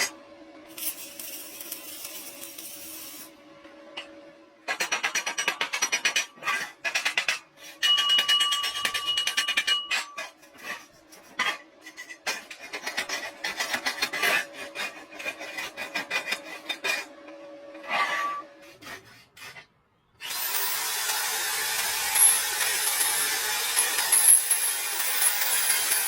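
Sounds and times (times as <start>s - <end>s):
tool rasping metal: 9.9s - 17.2s, 17.8s - 26.0s.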